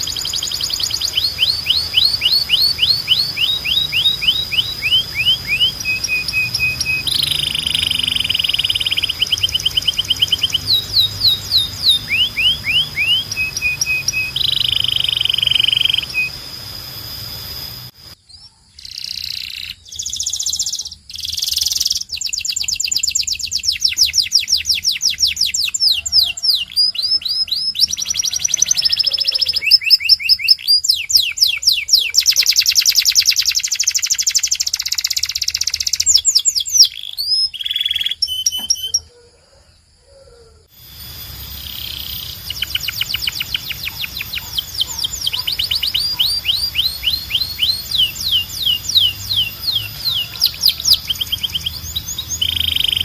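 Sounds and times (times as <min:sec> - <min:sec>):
canary singing: 0:00.0 - 0:39.3, 0:40.7 - 0:53.0.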